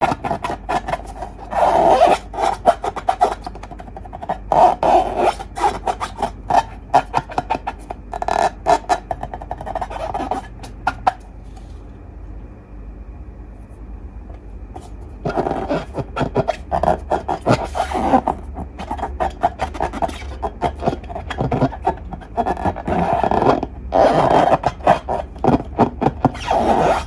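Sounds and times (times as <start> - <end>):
rubbing and scraping: 0.0 - 11.8, 14.8 - 27.0.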